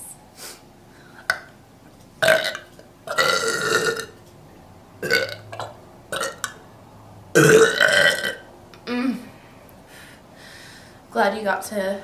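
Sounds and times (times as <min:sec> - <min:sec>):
woman burping: 0:02.2 - 0:04.2, 0:05.0 - 0:06.6, 0:07.4 - 0:09.3.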